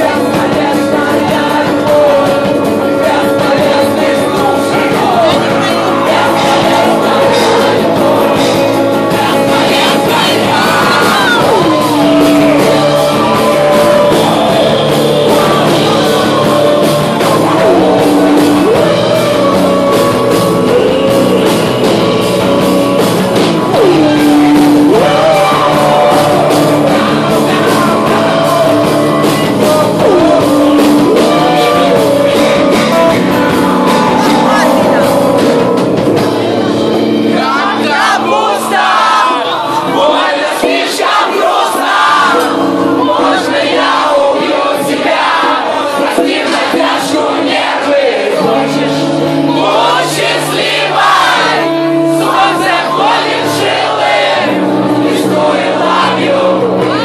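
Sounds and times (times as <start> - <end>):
person singing long notes: 0.0 - 41.2.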